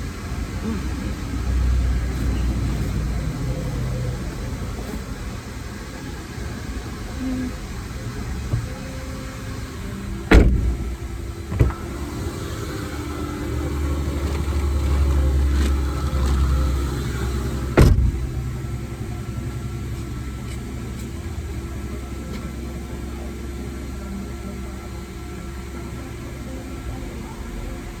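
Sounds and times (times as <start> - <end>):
deep hum: 0.0 - 28.0
vacuum cleaner running: 0.0 - 28.0
loud knocks: 10.3 - 12.0, 17.8 - 18.4.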